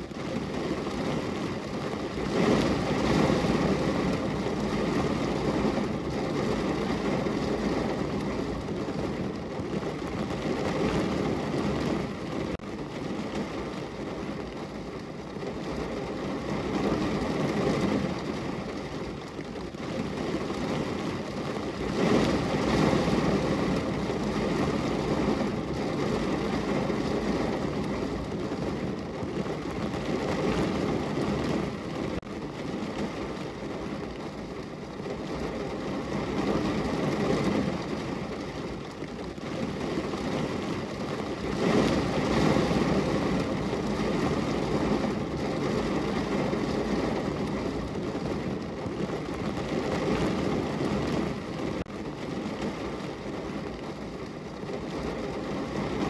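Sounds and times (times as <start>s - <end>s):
rain on a window pane: 0.0s - 56.0s.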